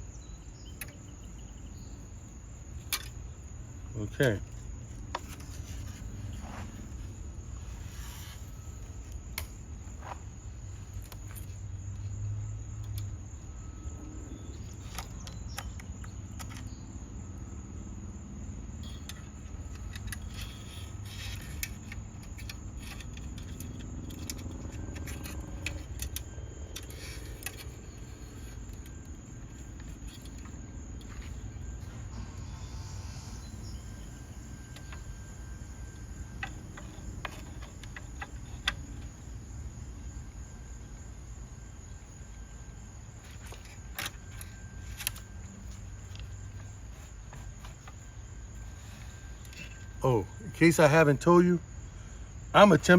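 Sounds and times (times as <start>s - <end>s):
faint crickets: 0.0s - 52.9s
steady low hum: 0.0s - 52.9s
small clicks and rattles: 18.8s - 31.8s, 36.3s - 39.3s.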